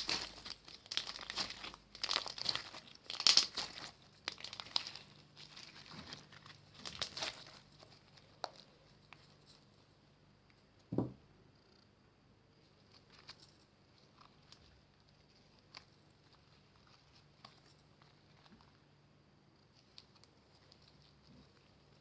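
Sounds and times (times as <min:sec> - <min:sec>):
soft thump: 0:10.9 - 0:11.2.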